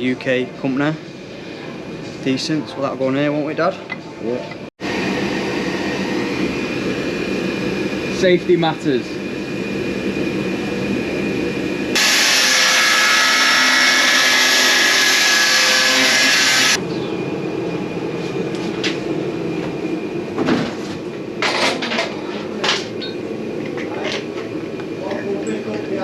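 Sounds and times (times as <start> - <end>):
angle grinder cutting metal: 12.0 - 16.8.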